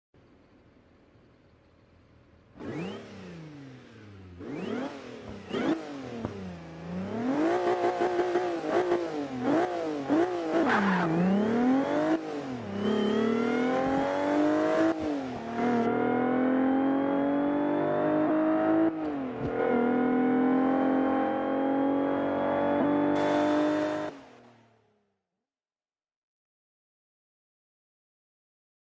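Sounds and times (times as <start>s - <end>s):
car engine revving: 2.5s - 24.8s
car accelerating hard: 2.6s - 24.4s.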